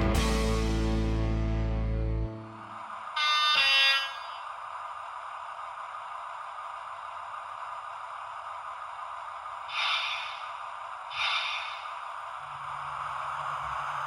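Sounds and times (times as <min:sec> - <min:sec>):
steady hiss: 0:04.2 - 0:14.0.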